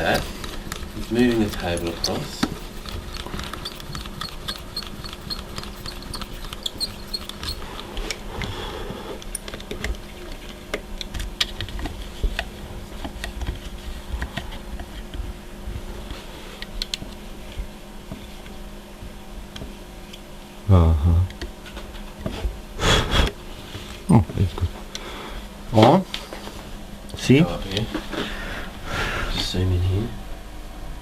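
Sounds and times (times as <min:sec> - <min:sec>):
milling machine humming faintly: 0:00.0 - 0:09.2.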